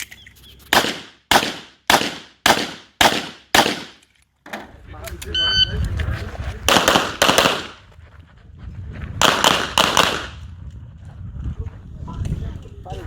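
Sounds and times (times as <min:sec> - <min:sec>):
pistol shots with echo: 0:00.7 - 0:04.0, 0:06.7 - 0:07.8, 0:09.2 - 0:10.4.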